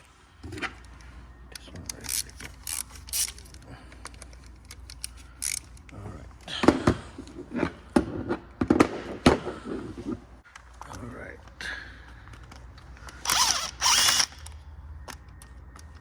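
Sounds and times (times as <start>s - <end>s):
hand tools clicking on metal: 1.8s - 6.0s.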